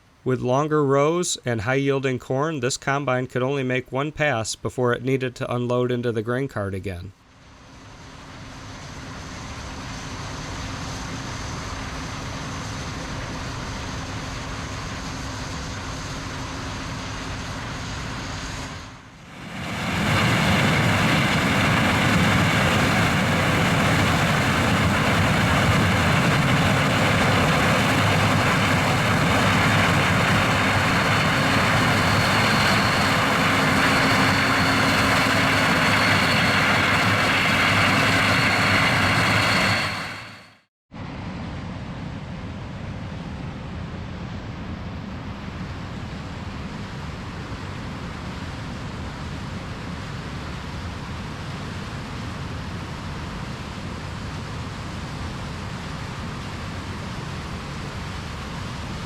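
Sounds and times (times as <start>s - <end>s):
mechanical whine: 8.7s - 40.5s
combine and tractor running: 19.5s - 40.4s.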